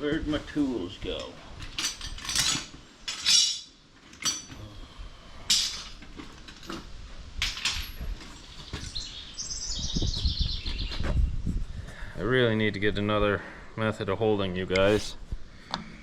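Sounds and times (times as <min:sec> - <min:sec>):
metal hand tools clinking: 0:01.2 - 0:04.6, 0:05.5 - 0:06.8.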